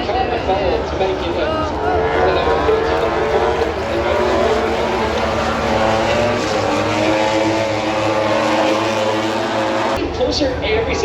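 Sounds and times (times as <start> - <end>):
racing motorcycles passing at high revs: 0.0 - 10.0.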